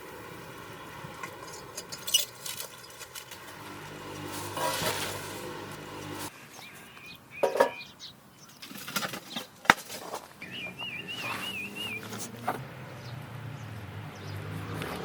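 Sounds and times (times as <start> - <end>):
short bird chirps: 10.4 - 12.2
songbird warbling whistle: 10.4 - 12.2.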